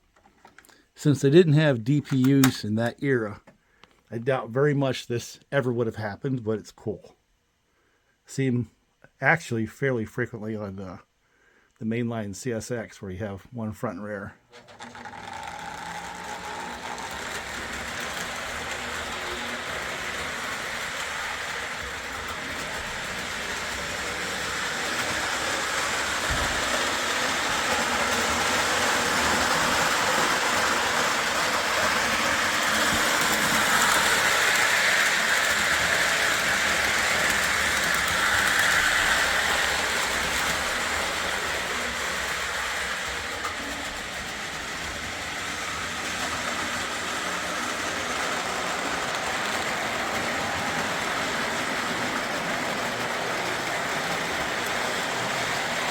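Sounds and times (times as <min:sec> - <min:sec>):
toy train wheels rumbling on rails: 0:14.5 - 0:55.9.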